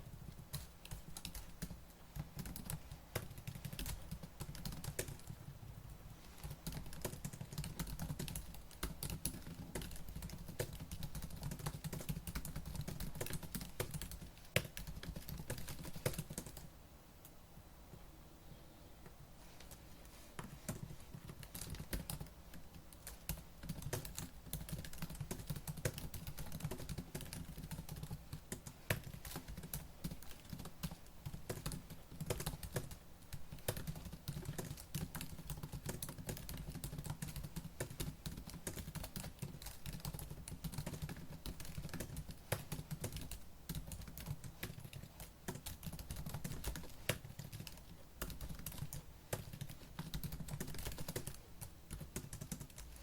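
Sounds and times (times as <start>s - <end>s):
fast laptop keyboard typing: 0.0s - 16.7s, 20.5s - 53.0s.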